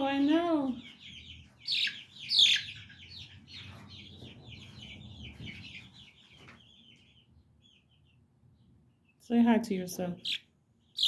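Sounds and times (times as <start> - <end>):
chicks peeping: 0.0 - 11.0
louder chick calls: 1.5 - 3.8.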